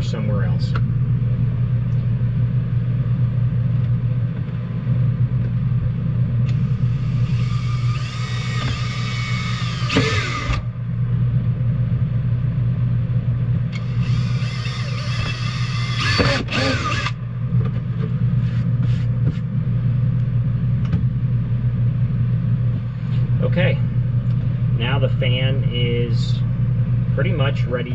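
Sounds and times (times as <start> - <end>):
steady low hum: 0.0 - 27.9
power drill whining: 6.6 - 10.6, 13.8 - 17.2.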